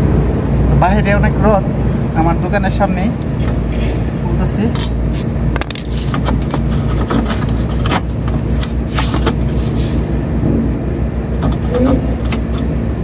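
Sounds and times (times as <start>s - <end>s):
vehicle engine rumble: 0.0s - 13.0s.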